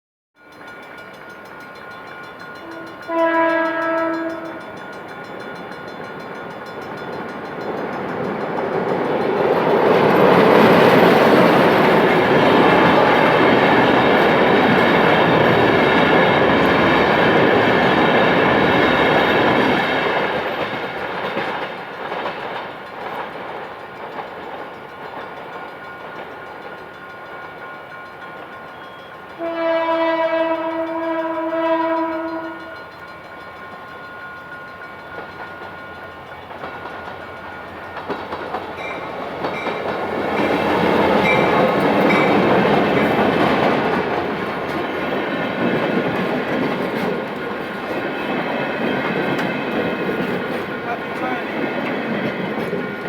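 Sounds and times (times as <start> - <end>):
train passing on rails: 0.4 - 53.0
locomotive horn blast: 2.6 - 4.8, 29.4 - 32.8.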